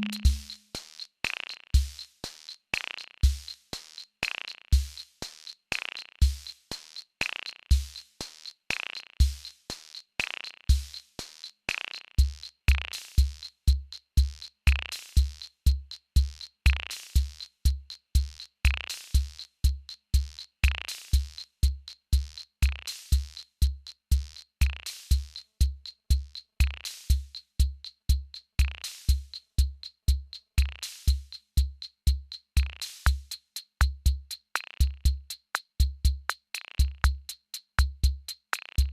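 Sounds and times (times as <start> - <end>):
faint steady high tone: 0.0 - 0.6.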